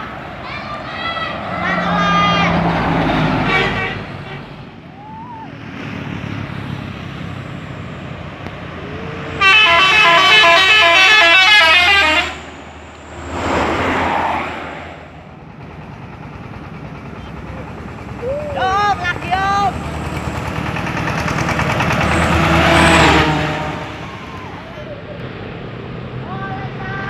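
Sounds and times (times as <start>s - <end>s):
steady traffic noise: 0.0s - 27.0s
vehicle passing: 0.0s - 27.0s
multi-tone musical horn: 9.4s - 12.4s.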